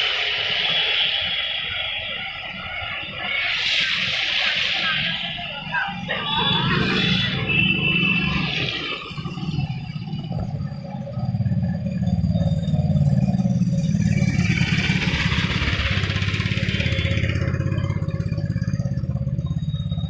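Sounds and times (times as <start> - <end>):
tyres hissing on wet road: 0.0 - 10.4
vehicle engine running: 4.6 - 20.0.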